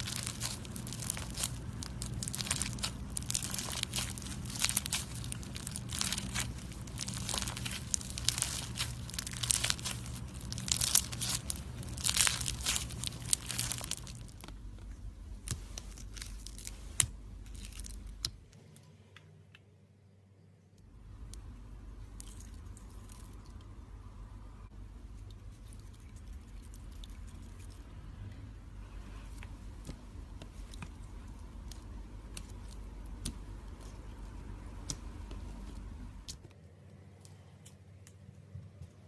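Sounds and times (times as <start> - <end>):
crackling handling noise: 0.0 - 19.3
low steady hum: 0.0 - 39.0.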